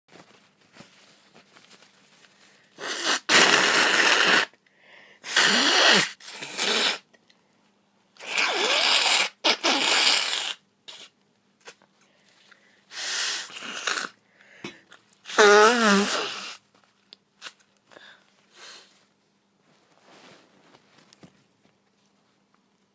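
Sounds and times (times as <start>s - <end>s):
person blowing nose: 2.8s - 4.6s, 5.2s - 7.1s, 8.2s - 11.2s, 12.9s - 14.2s, 15.3s - 16.7s.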